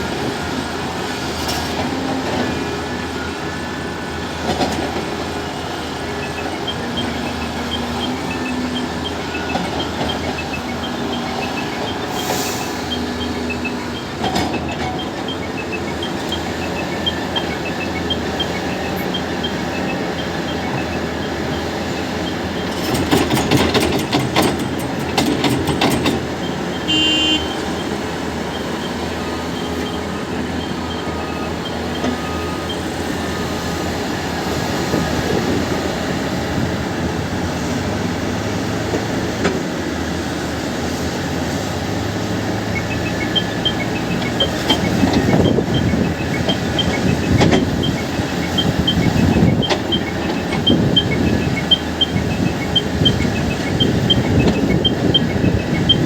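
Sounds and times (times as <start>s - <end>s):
diesel machinery running: 0.0s - 56.0s
short beep: 26.0s - 28.7s.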